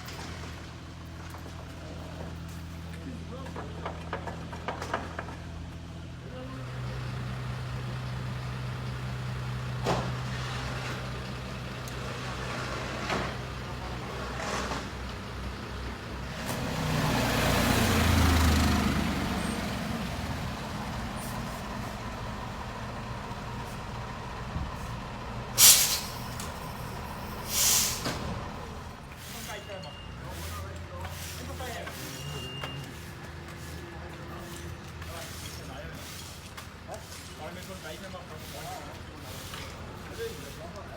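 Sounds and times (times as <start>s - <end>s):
truck engine humming: 5.4s - 35.2s
vehicle passing: 12.1s - 29.0s
air brake hiss: 25.6s - 28.3s.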